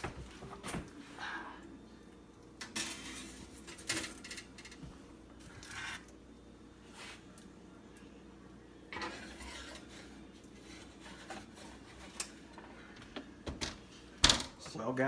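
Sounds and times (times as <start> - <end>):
kitchenware rubbing and scraping: 5.4 - 6.1, 8.9 - 13.0.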